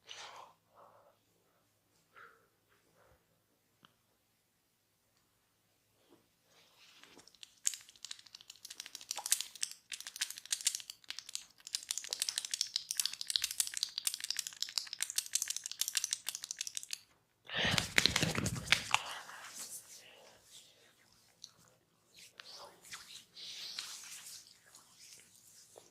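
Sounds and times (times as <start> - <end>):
fingers scratching through hair: 7.1 - 17.0, 22.2 - 25.9.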